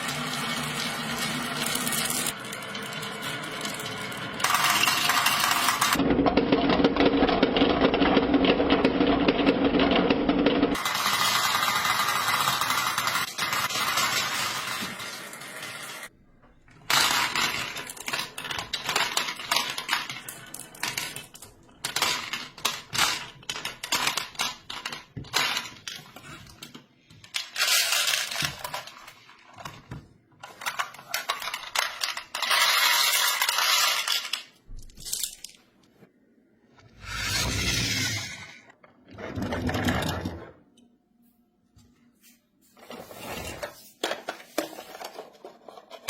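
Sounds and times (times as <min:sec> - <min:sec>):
marbles clattering on track: 0:00.1 - 0:16.1, 0:16.9 - 0:26.4, 0:30.4 - 0:35.6.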